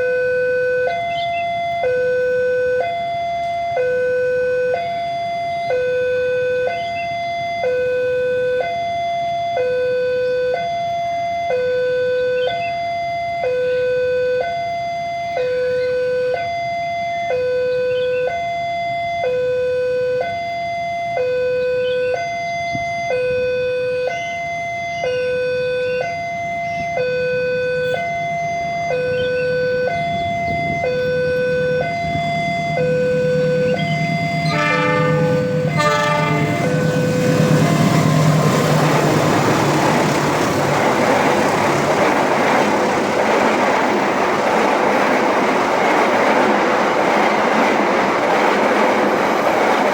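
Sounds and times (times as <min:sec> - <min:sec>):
two-tone crossing alarm: 0:00.0 - 0:49.9
train rumble approaching: 0:26.4 - 0:49.9.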